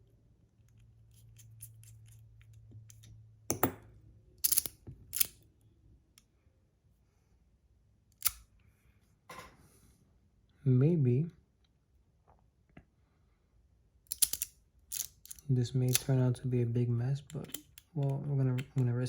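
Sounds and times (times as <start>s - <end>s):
fidget slider parts clicking: 4.4s - 5.4s, 14.1s - 16.1s.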